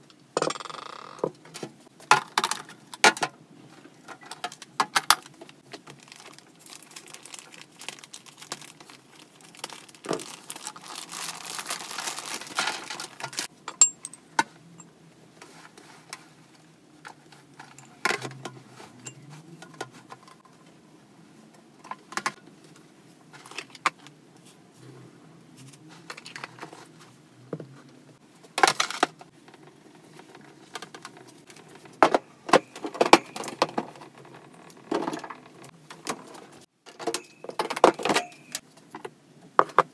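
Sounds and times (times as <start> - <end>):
crinkling rustle: 3.8 - 13.5.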